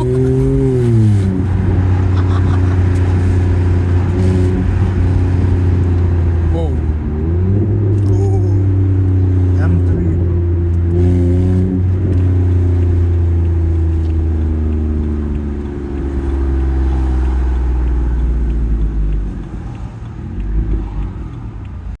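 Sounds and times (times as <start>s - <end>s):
vehicle engine running: 0.0s - 22.0s.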